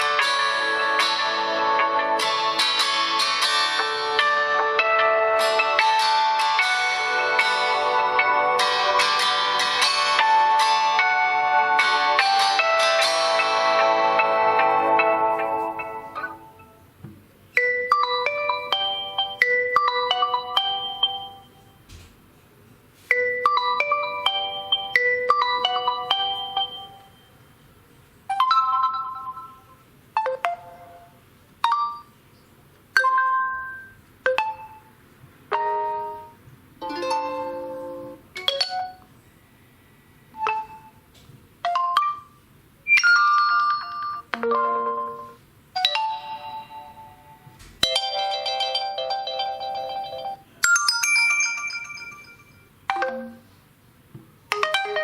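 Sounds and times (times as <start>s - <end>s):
chiming ringtone melody: 0.0s - 16.8s, 17.6s - 21.6s, 23.1s - 27.4s, 28.3s - 32.2s, 33.0s - 34.9s, 35.5s - 39.0s, 40.4s - 41.0s, 41.7s - 53.6s, 54.5s - 55.0s
electronic phone ringtone chimes: 17.6s - 21.6s, 23.1s - 27.4s, 28.3s - 31.0s, 31.7s - 32.1s, 40.4s - 41.0s, 42.9s - 53.5s.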